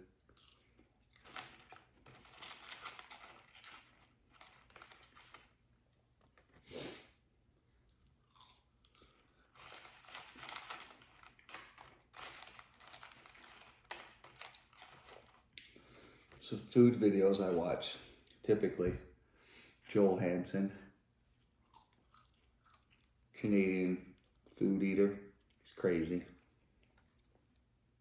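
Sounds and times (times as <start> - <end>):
soft crunching: 0.0 - 6.7, 7.6 - 16.7, 21.2 - 23.2
person chewing food: 0.2 - 2.3, 7.7 - 10.4, 21.3 - 23.3.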